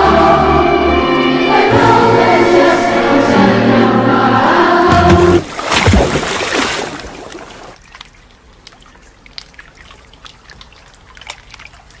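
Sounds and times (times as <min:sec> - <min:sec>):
water rushing: 0:04.9 - 0:12.0
water trickling and dripping: 0:05.4 - 0:12.0.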